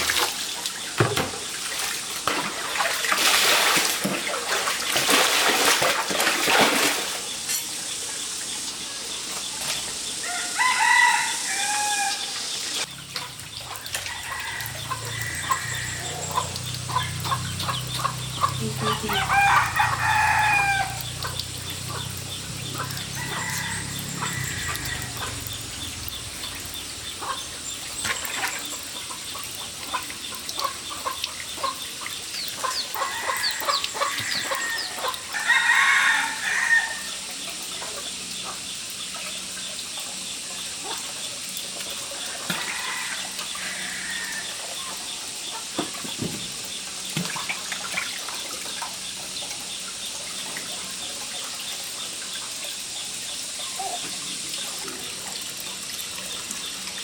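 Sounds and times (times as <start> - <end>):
rooster crowing: 10.2 - 12.4, 14.0 - 21.4, 22.7 - 25.6, 32.9 - 37.2, 42.5 - 44.6
chickens clucking: 13.1 - 35.2.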